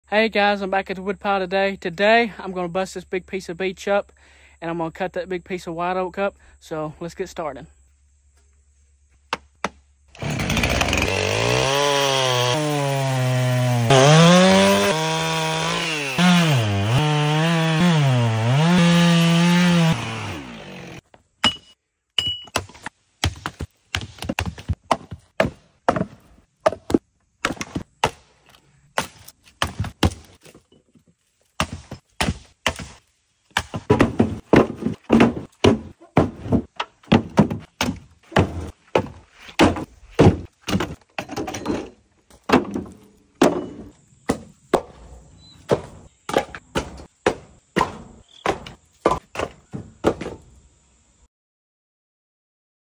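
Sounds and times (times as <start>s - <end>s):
chainsaw bogging and revving: 10.1s - 21.0s
sharp wooden knocks: 22.5s - 28.2s, 33.6s - 41.4s, 45.7s - 50.4s.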